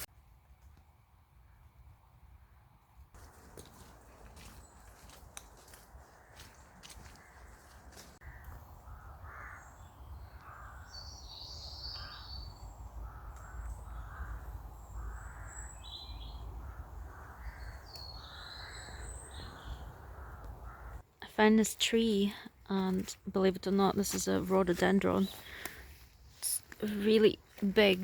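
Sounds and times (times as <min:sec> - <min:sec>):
small birds chirping: 0:03.8 - 0:21.0, 0:21.6 - 0:28.0
crows cawing: 0:04.4 - 0:11.0, 0:11.8 - 0:12.4, 0:13.0 - 0:21.0.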